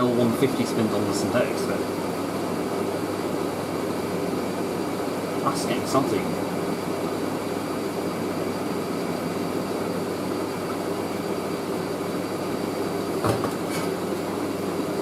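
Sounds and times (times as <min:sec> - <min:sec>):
washing machine drum spinning: 0:09.7 - 0:15.0.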